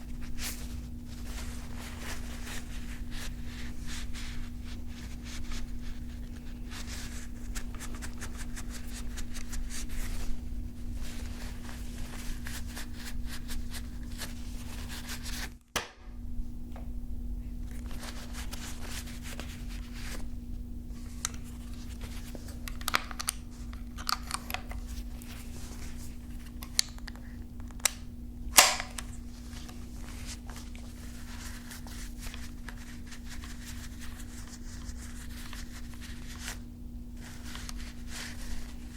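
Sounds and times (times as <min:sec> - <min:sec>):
low hum: 0:15.8 - 0:22.3.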